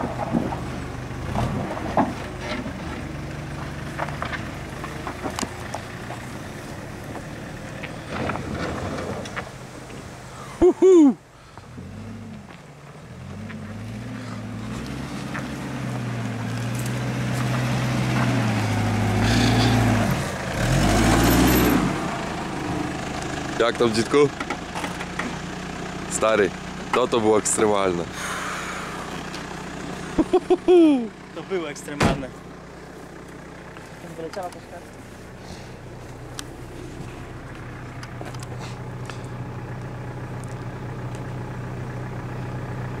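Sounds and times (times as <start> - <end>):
engine pulling under load: 0.0 - 43.0
engine revving hard: 17.1 - 22.4.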